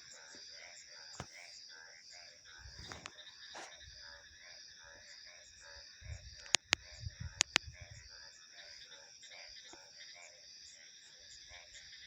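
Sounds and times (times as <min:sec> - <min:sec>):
sharp loud clicks: 0:06.4 - 0:07.7.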